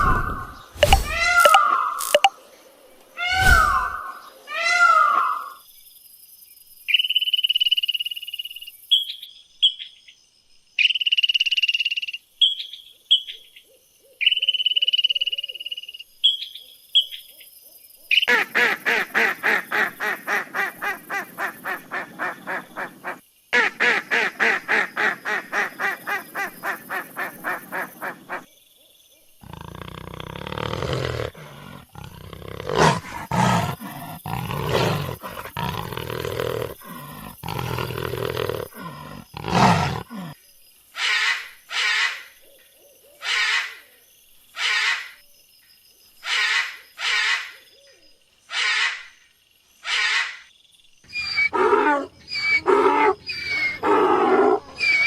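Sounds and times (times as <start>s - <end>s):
high whistled animal notes: 0.0s - 2.3s, 51.1s - 54.0s, 54.7s - 55.0s
rapid pulsed animal call: 0.0s - 2.3s, 3.2s - 5.6s, 29.4s - 40.4s
rough low animal call: 0.0s - 2.3s, 3.2s - 5.1s, 29.4s - 40.4s
short chirps: 0.8s - 2.3s.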